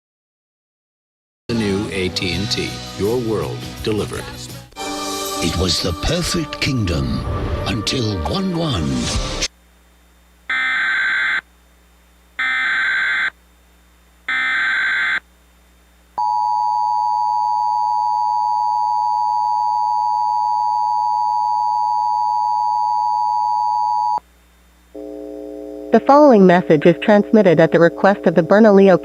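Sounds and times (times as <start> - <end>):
screeching digital data bursts: 12.4 - 13.3, 14.3 - 15.2.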